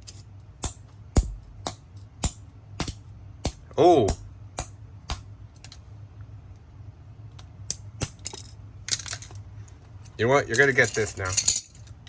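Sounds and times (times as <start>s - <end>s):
plastic pieces clattering: 8.3s - 9.4s, 10.5s - 11.9s.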